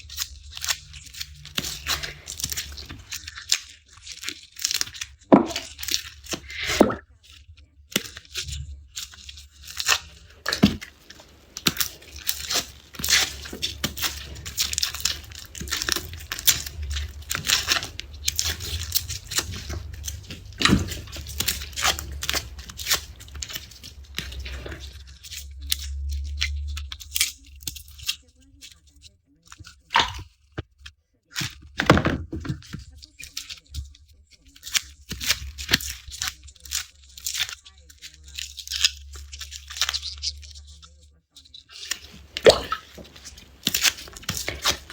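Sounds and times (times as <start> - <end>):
garlic skins crackling and tearing: 0.0 - 7.0, 7.9 - 28.2, 34.6 - 40.8, 41.7 - 44.9
low rumble: 11.8 - 28.0.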